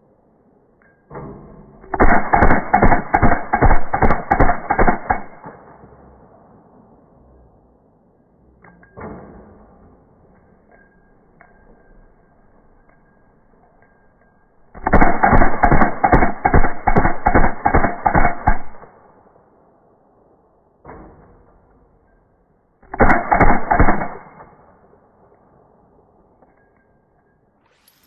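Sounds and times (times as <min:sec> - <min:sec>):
slowed rifle shots: 0:00.8 - 0:07.4, 0:12.9 - 0:22.0, 0:22.8 - 0:26.8.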